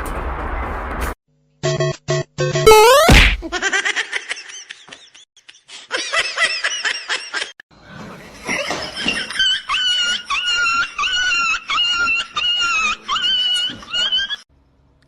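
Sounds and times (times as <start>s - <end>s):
wavering high-pitched sound: 2.7s - 3.1s
person laughing: 3.4s - 7.6s, 8.6s - 14.4s.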